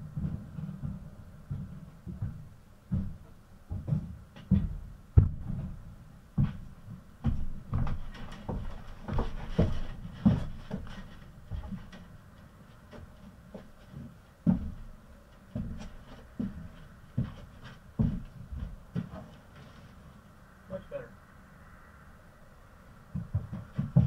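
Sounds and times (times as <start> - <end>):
dull low thumps: 0.0 - 10.9.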